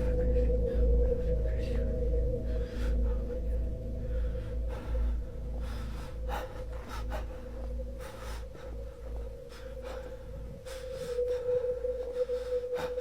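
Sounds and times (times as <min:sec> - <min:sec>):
breath-like gusts of noise: 0:00.0 - 0:13.0
deep rumbling drone: 0:00.0 - 0:13.0.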